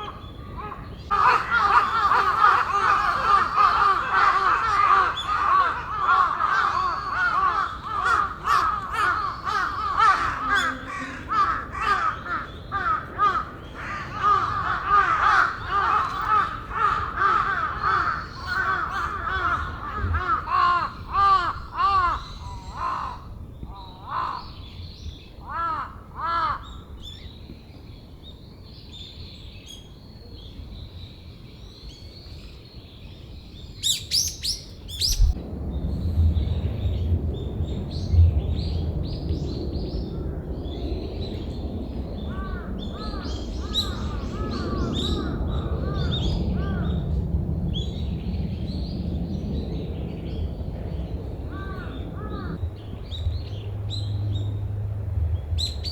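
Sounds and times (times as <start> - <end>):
crows cawing: 0.0 - 24.6, 25.4 - 26.7, 42.3 - 46.9, 51.5 - 52.6
high sweeping bird calls: 33.7 - 35.4, 48.9 - 55.9
low rumbling noise: 35.0 - 55.9.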